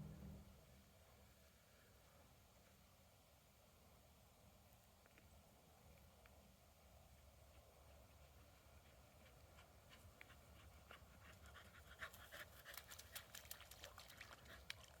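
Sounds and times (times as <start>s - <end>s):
soft sharp clicks and crackles: 4.7s - 7.6s.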